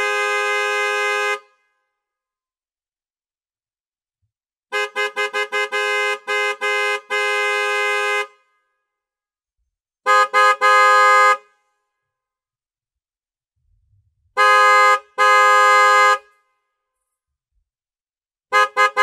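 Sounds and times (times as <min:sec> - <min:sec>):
car horn honking: 0:00.0 - 0:01.9, 0:04.7 - 0:09.0, 0:10.0 - 0:12.0, 0:14.3 - 0:16.9, 0:18.5 - 0:19.0.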